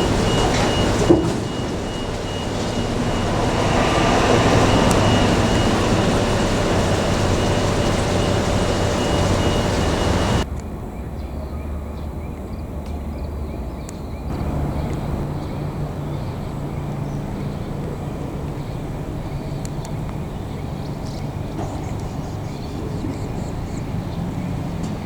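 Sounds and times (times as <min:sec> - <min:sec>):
high whistling tone: 0:00.0 - 0:10.4
low engine hum: 0:00.0 - 0:10.5, 0:14.3 - 0:25.0
loud vehicle noise: 0:00.0 - 0:10.9, 0:14.3 - 0:25.0.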